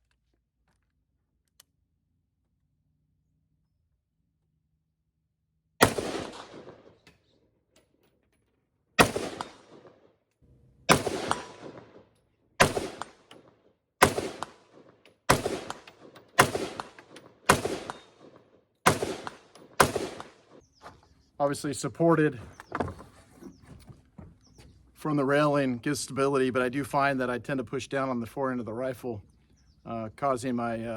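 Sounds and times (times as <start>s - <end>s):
rifle shots with echo: 5.8s - 7.0s, 9.0s - 10.1s, 10.9s - 20.6s.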